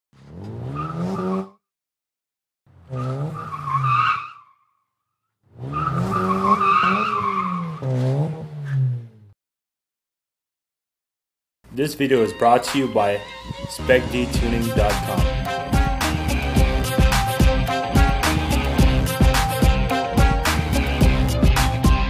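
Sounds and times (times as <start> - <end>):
car engine revving: 0.2 - 1.5, 5.5 - 9.3, 13.9 - 22.0
tyres squealing: 5.6 - 8.2.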